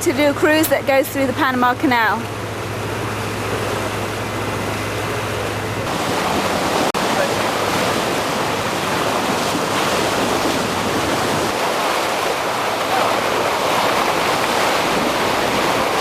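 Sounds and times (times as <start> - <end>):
water rushing past boat: 0.0 - 16.0
wind rushing: 5.8 - 16.0.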